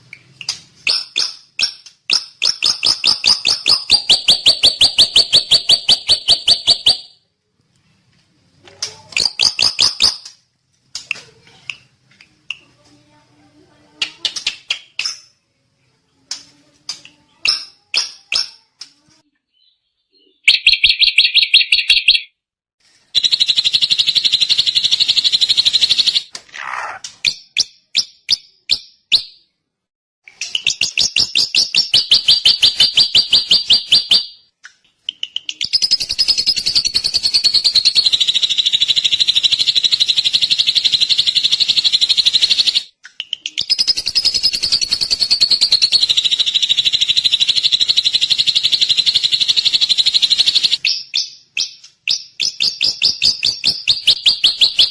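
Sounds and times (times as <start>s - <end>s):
bird singing trills: 0.8s - 7.2s, 9.2s - 10.3s, 19.4s - 22.3s.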